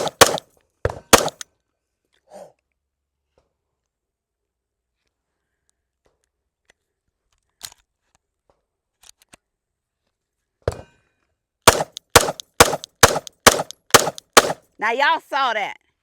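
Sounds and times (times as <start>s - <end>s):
pistol shots cracking: 0.0s - 0.4s, 1.1s - 1.4s, 11.7s - 14.6s.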